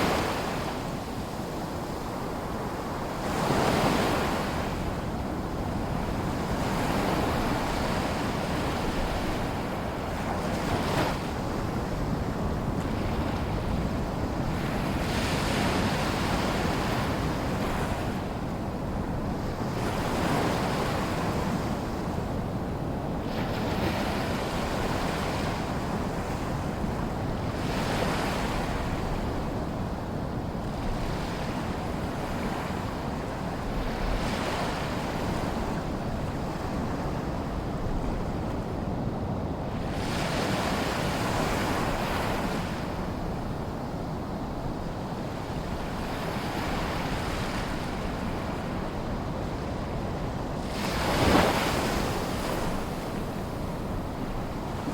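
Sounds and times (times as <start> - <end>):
small waves lapping ashore: 45.4 - 54.9.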